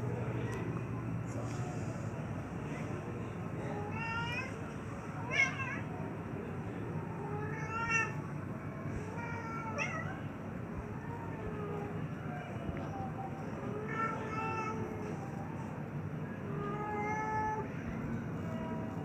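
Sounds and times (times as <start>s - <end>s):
cat yowling: 5.2s - 5.9s, 7.2s - 8.2s, 9.1s - 10.2s, 16.6s - 17.7s.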